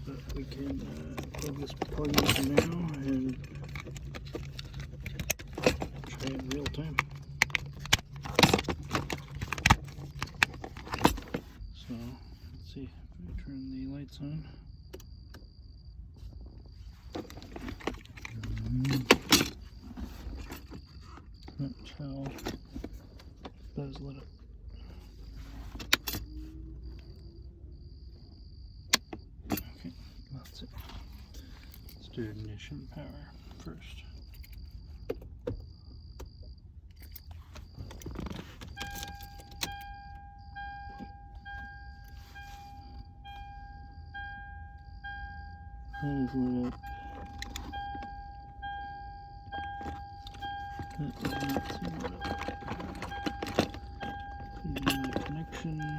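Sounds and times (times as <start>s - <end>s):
keys jangling and clicking: 0.0s - 11.7s, 16.9s - 23.8s, 24.8s - 27.2s, 28.9s - 32.5s, 33.5s - 55.9s
car warning chime: 5.2s - 12.8s, 38.6s - 55.9s
faint high-pitched tone: 38.8s - 55.9s.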